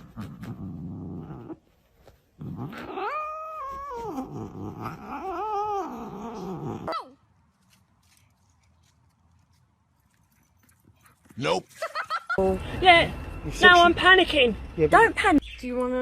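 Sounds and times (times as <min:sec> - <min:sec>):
animal growling: 0:00.0 - 0:01.6, 0:02.4 - 0:07.0
animal yowling: 0:02.8 - 0:07.0.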